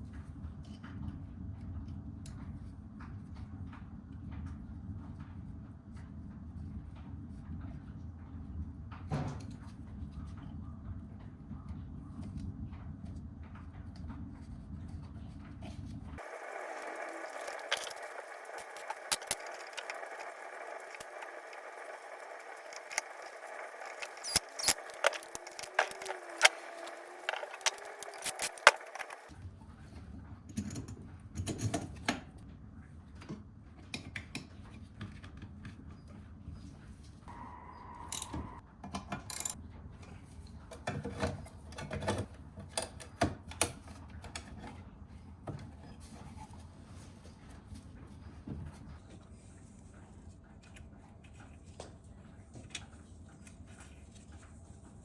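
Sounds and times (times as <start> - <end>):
steady machine hum: 16.1 - 29.3.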